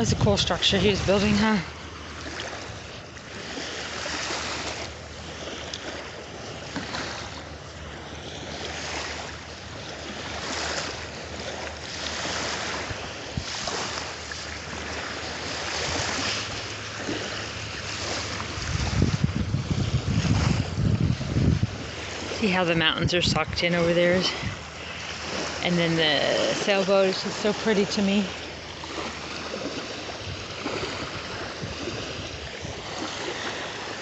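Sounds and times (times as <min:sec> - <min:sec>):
wind buffeting microphone: 0:00.0 - 0:01.7, 0:14.8 - 0:34.0
ocean surf on beach: 0:00.0 - 0:34.0.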